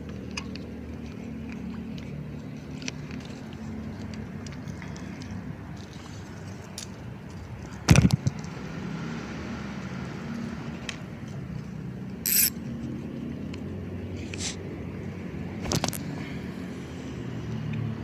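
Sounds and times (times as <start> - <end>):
low traffic rumble: 0.0 - 18.0
sharp rattle: 12.3 - 12.6.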